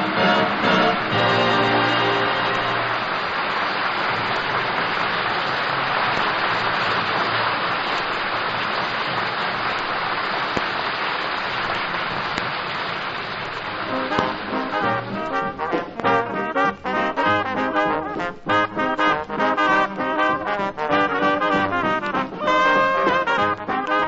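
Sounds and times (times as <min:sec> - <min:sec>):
band music with brass: 0:00.0 - 0:03.1, 0:13.8 - 0:24.0
audience applauding: 0:00.0 - 0:24.0.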